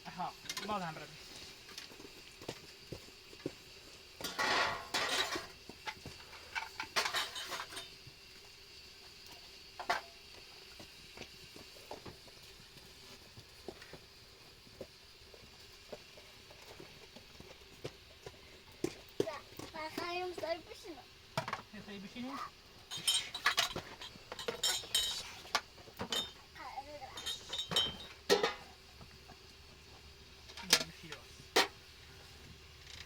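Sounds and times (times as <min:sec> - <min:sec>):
small objects clinking: 0:22.8 - 0:26.5, 0:27.1 - 0:28.7.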